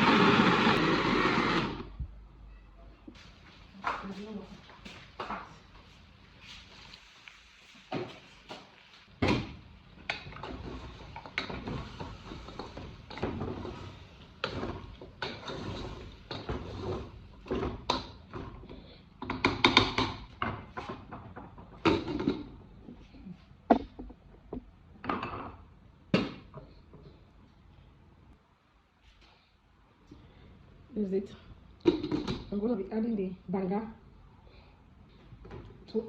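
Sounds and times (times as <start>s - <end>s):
pots and utensils clattering: 10.0s - 22.6s.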